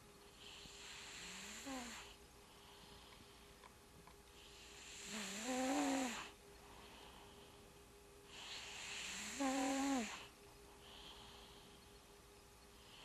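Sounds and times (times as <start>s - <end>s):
cat snoring: 0.4s - 2.2s, 4.5s - 6.4s, 8.3s - 10.3s.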